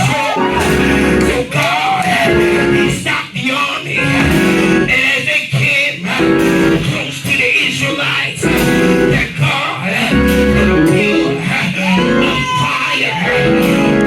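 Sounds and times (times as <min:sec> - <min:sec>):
bass notes: 0:00.0 - 0:03.1, 0:04.0 - 0:05.2, 0:06.1 - 0:07.0, 0:08.4 - 0:09.4, 0:10.0 - 0:12.5, 0:13.3 - 0:14.0
guitar playing chords: 0:00.4 - 0:01.5, 0:02.2 - 0:03.0, 0:04.0 - 0:05.0, 0:06.2 - 0:06.9, 0:08.4 - 0:09.3, 0:10.1 - 0:12.4, 0:13.3 - 0:14.0.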